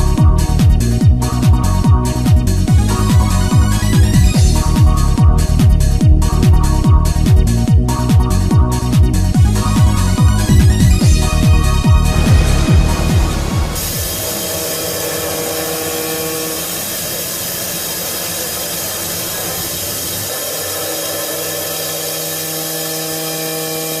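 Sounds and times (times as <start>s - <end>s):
electronic music: 0.0s - 19.8s
machine tool cutting metal: 11.8s - 24.0s.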